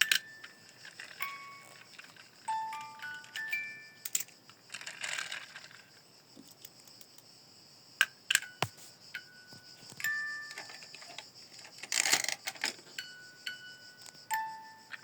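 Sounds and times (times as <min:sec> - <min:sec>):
toy models clicking and rustling: 0:00.0 - 0:07.2, 0:09.9 - 0:13.0.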